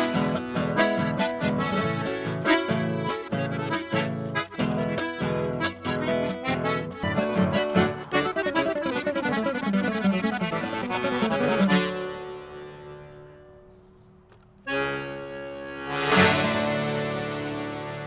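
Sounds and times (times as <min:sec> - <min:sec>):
accordion playing: 0:00.0 - 0:13.8, 0:14.6 - 0:18.0.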